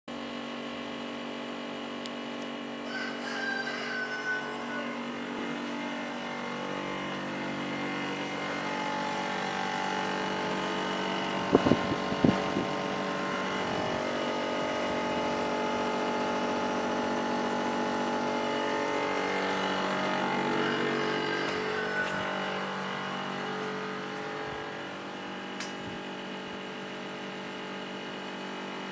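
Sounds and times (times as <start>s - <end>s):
air conditioner humming: 2.6s - 28.2s.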